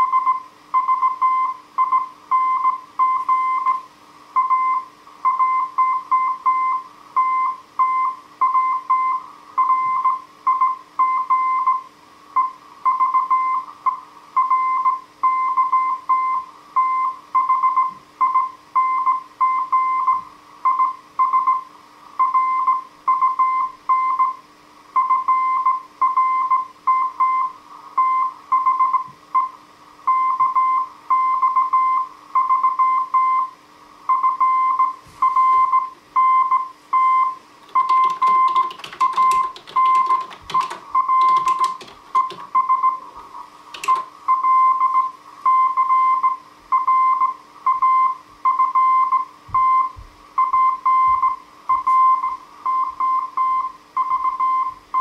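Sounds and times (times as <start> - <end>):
morse code tone: 34.2 - 43.0, 43.8 - 46.2.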